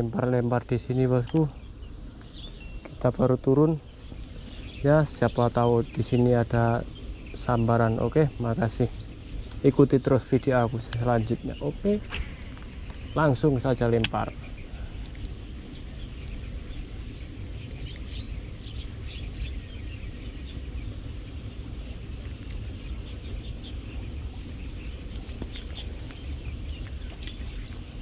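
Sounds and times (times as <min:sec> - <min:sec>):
high insect drone: 0:00.0 - 0:28.0
insects chirping in pulsed trills: 0:00.0 - 0:28.0
faint ticks: 0:01.0 - 0:03.0, 0:13.8 - 0:19.8, 0:21.0 - 0:28.0
low rumble: 0:03.8 - 0:28.0.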